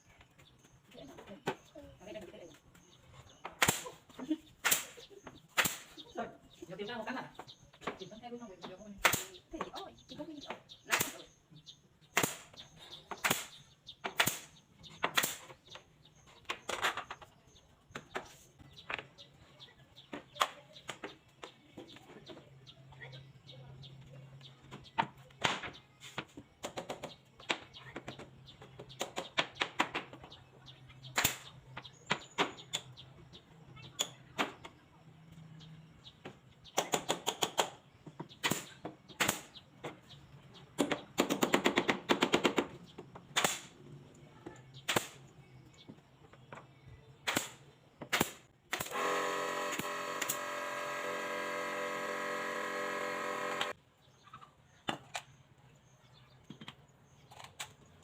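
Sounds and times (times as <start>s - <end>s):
power tool motor running: 48.8s - 53.8s.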